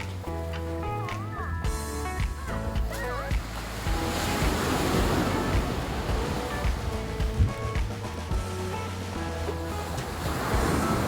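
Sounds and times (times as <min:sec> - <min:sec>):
background music with low thuds: 0:00.0 - 0:11.0
ocean surf: 0:02.4 - 0:11.0.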